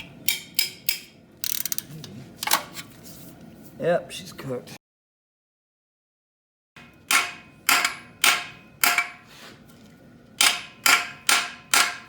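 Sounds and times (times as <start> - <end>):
hammer striking metal socket: 6.8 - 9.2.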